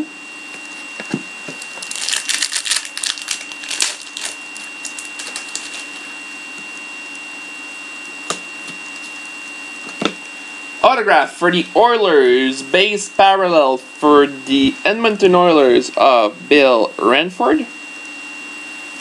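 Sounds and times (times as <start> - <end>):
card wrapping crackling: 0.6 - 6.1.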